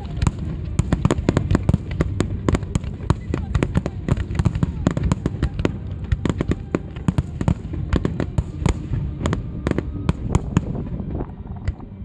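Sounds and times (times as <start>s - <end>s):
fireworks cracking and banging: 0.0s - 11.8s
low rumble of explosions: 0.0s - 12.0s.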